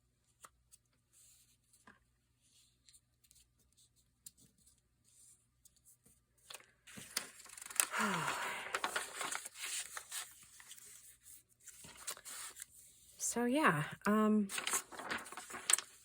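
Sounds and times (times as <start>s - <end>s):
paper tapping and rustling: 6.4s - 12.7s, 14.5s - 16.0s.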